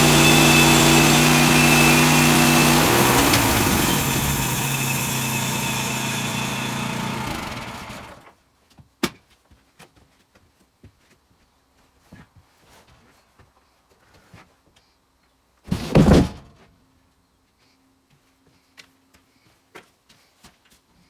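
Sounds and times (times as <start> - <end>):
small gasoline engine shutting off: 0.0 - 8.3.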